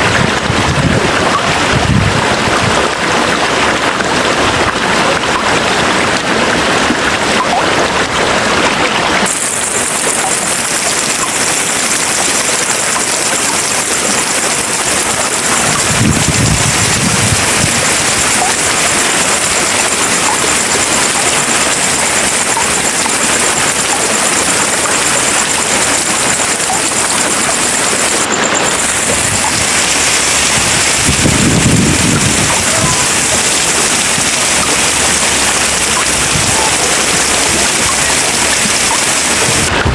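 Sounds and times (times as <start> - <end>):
steady rain hiss: 0.0 - 39.9
low rumbles: 28.0 - 39.9.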